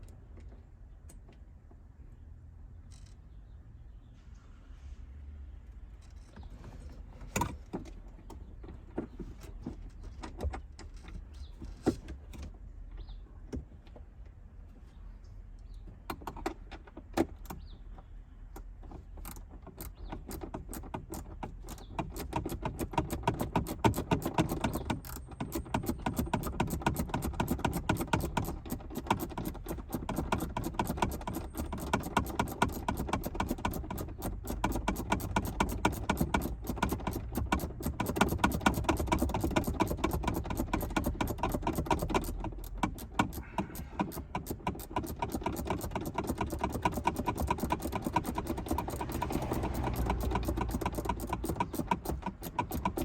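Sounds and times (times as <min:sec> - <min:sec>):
ratchet wrench clicking: 0:19.2 - 0:53.0.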